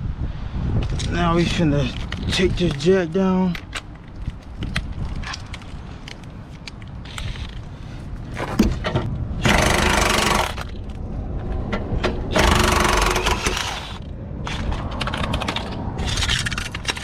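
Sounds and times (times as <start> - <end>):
power tool hammering rapidly: 9.4 - 10.6, 12.3 - 14.0.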